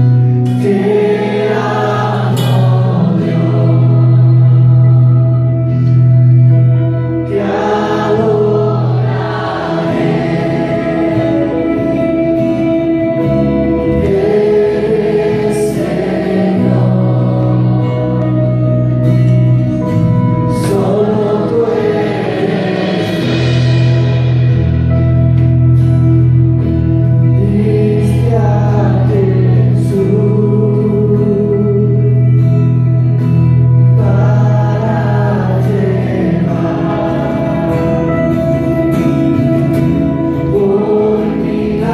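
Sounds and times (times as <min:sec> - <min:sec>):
group singing: 0:00.0 - 0:05.9, 0:07.2 - 0:12.8, 0:13.8 - 0:19.8, 0:20.5 - 0:24.4, 0:27.2 - 0:31.4, 0:33.9 - 0:41.9
worship band playing chords and bass: 0:00.0 - 0:41.9.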